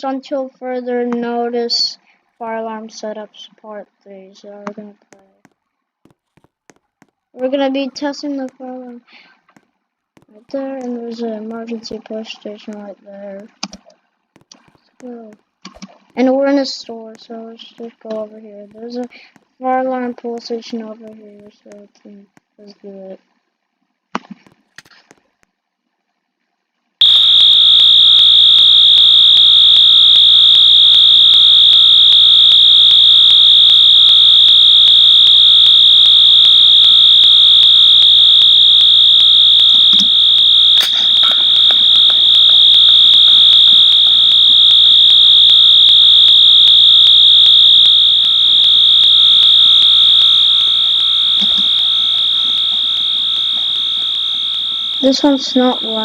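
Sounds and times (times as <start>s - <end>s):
fire alarm continuous tone: 14.4s - 21.8s, 27.0s - 56.0s.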